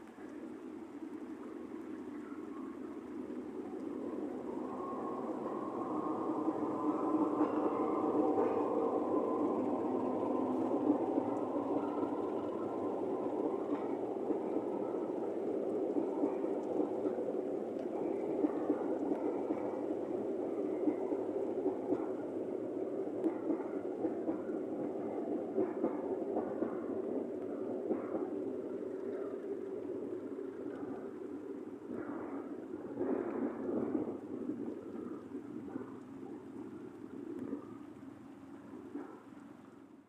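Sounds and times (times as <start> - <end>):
diesel train rumble: 3.6 - 29.6.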